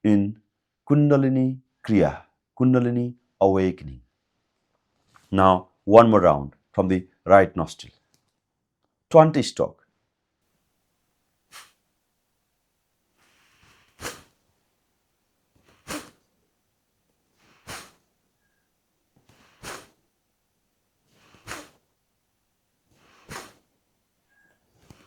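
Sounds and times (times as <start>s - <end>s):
forceful nasal exhalations: 11.4s - 11.8s, 13.1s - 14.7s, 15.5s - 16.4s, 17.2s - 20.1s, 21.0s - 21.9s, 22.9s - 25.0s
soft breath in: 11.5s - 11.8s, 13.1s - 14.5s, 15.5s - 16.3s, 17.3s - 20.0s, 21.0s - 21.9s, 22.9s - 23.7s, 24.3s - 25.0s.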